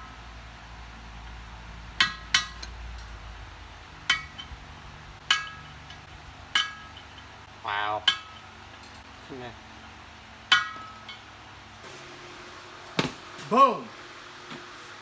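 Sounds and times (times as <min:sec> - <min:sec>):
metal struck with ringing clink: 0:04.0 - 0:04.6, 0:05.2 - 0:07.3, 0:08.0 - 0:09.3, 0:10.5 - 0:13.4.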